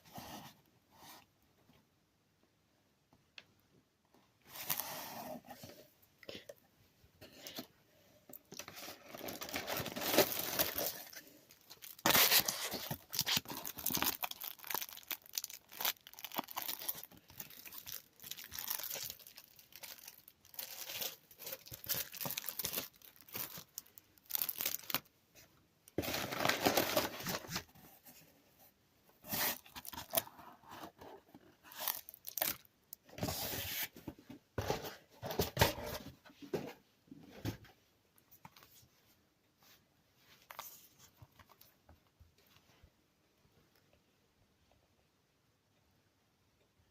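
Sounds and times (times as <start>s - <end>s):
light packaging crinkling: 8.3s - 28.2s, 29.2s - 33.3s
packaging ripping and rustling: 8.6s - 25.1s, 26.0s - 27.7s, 31.7s - 32.7s.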